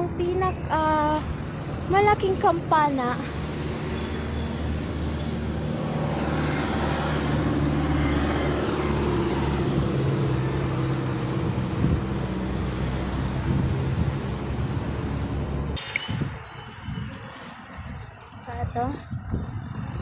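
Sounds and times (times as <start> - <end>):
road traffic noise: 0.0 - 20.0.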